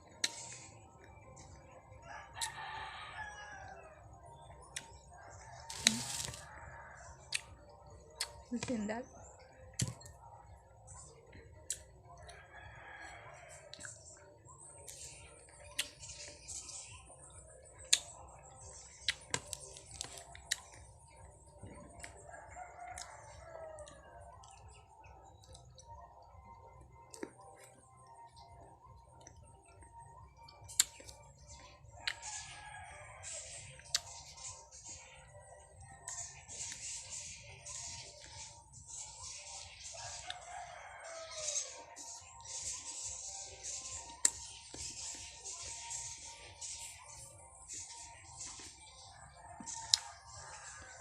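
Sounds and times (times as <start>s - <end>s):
crunchy bites of fruit: 5.6s - 6.6s, 19.0s - 20.8s, 30.7s - 31.2s.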